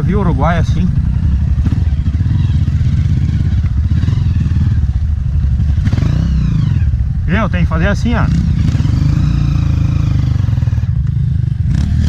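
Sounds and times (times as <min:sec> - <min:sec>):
motorcycle engine running: 0:00.0 - 0:12.0.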